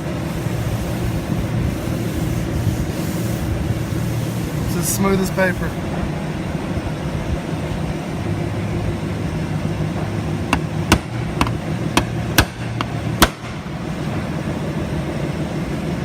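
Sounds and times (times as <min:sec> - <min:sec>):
steady low hum: 0:00.0 - 0:16.0
hammer striking sheet metal: 0:10.5 - 0:13.6.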